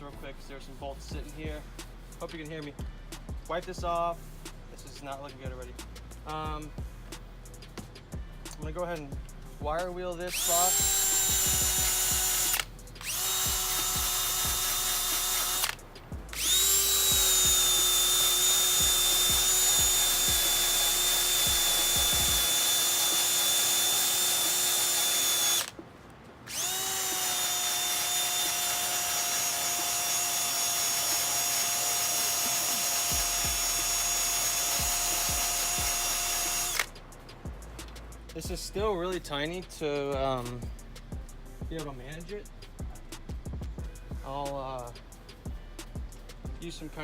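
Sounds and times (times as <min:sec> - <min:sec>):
wire wheel grinding metal: 0:10.1 - 0:25.7, 0:26.5 - 0:36.9.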